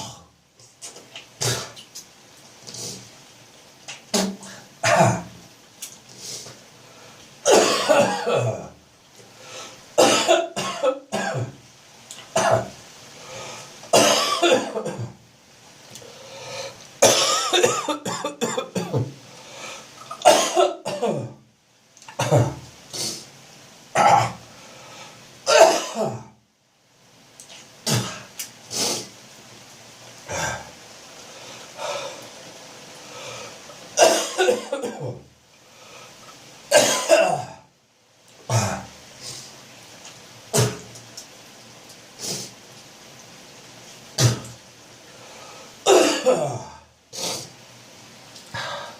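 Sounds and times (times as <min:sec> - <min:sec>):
man coughing: 0:07.5 - 0:08.7, 0:10.0 - 0:11.5, 0:17.0 - 0:19.0, 0:20.2 - 0:21.3, 0:25.5 - 0:26.2, 0:34.0 - 0:35.2, 0:36.7 - 0:37.6, 0:45.9 - 0:46.7
throat clearing: 0:40.6 - 0:40.9, 0:44.2 - 0:44.6.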